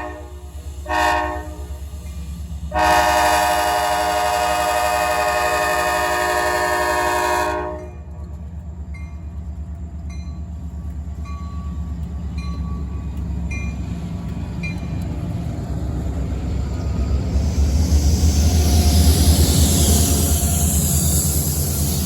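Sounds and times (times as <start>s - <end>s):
locomotive air horn chord: 0.0s - 1.8s, 2.7s - 8.0s.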